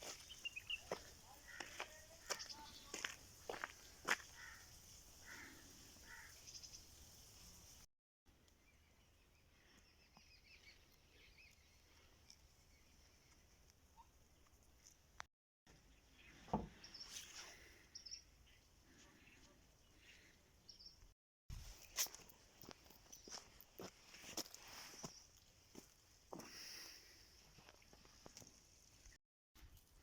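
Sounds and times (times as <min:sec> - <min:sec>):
bird chirps: 0:00.0 - 0:03.0.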